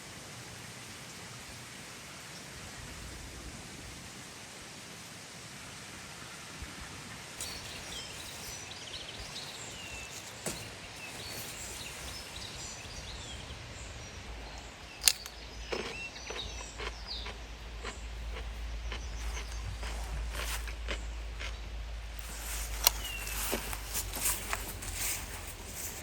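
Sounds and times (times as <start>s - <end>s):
steady hiss: 0.0s - 15.4s
small birds chirping: 7.4s - 26.0s
sharp click: 15.0s - 15.4s.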